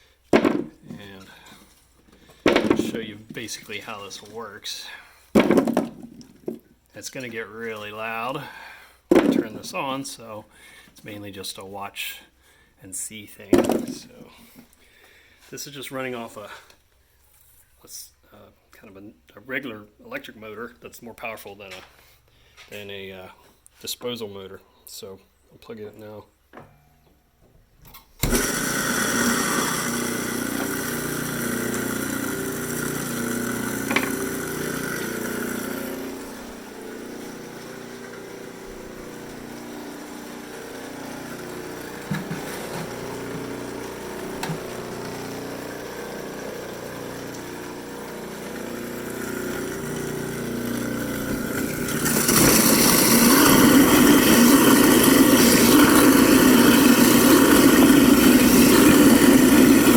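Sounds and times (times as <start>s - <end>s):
electric apple grinder grinding: 28.2s - 59.9s.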